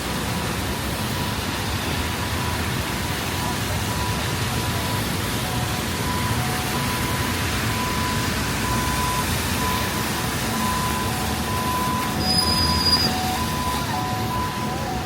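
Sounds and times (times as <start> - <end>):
city street noise: 0.0 - 15.0
rain hiss: 0.0 - 15.0
two-pitch electronic beep: 10.5 - 15.0
high squeal: 12.1 - 13.6.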